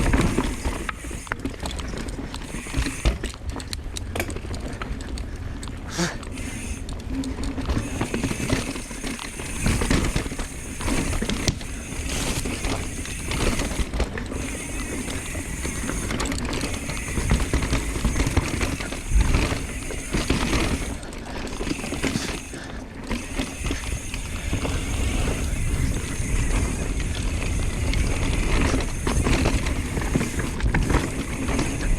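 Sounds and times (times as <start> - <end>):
bike hub ratcheting buzz: 0.0 - 31.9
tyres rumbling over dirt: 0.0 - 31.9
bike knocking over bumps: 7.2 - 31.9.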